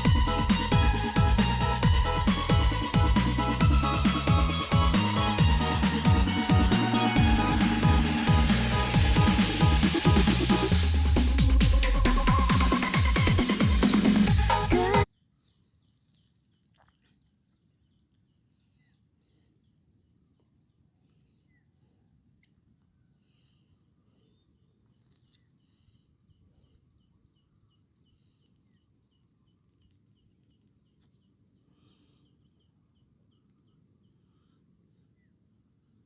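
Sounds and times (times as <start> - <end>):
electronic background music: 0.0 - 15.1.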